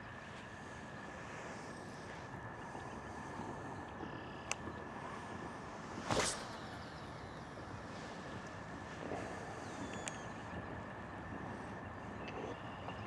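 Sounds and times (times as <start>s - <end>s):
loud swish: 6.1s - 6.7s.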